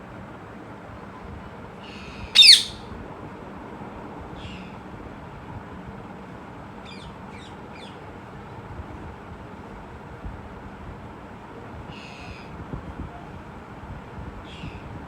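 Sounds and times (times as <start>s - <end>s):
parrot chirps: 2.4s - 2.8s
parrot squawking: 2.4s - 2.8s.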